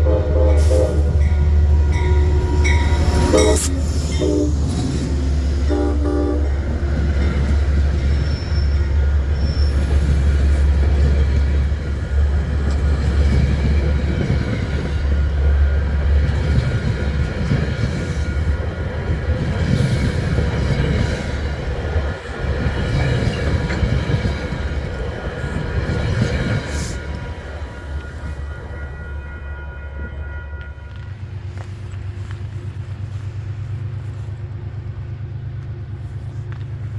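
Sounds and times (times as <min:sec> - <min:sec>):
train rumbling past: 0:00.0 - 0:36.9
faint wheel squeal: 0:08.1 - 0:10.0.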